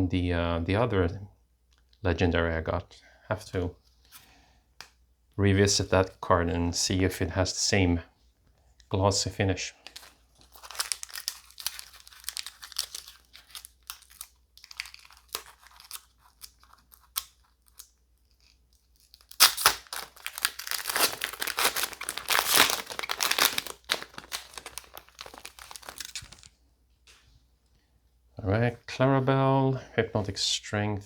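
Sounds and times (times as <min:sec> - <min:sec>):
card handling: 0:09.8 - 0:26.6
wrapper tearing and crinkling: 0:09.9 - 0:26.5.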